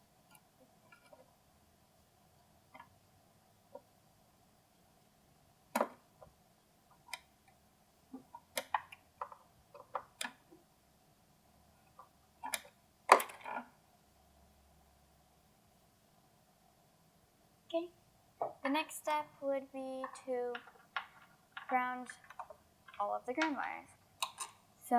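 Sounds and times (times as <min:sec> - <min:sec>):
tools clicking and knocking: 0:20.0 - 0:23.6.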